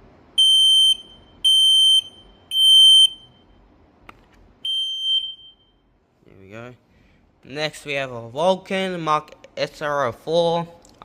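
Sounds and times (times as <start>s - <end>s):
high-pitched smoke alarm beeps: 0.4s - 3.6s, 4.6s - 5.8s.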